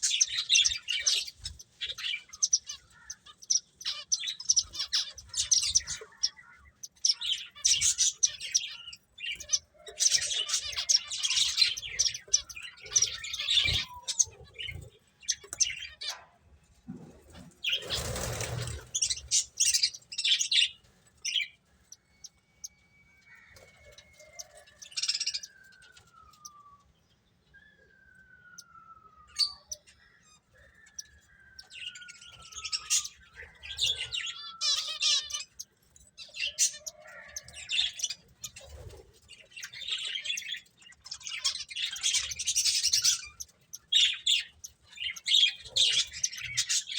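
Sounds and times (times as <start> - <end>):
finches chirping: 0.0 - 16.3, 17.3 - 26.6, 27.9 - 46.9
slow falling whistles: 27.6 - 29.6.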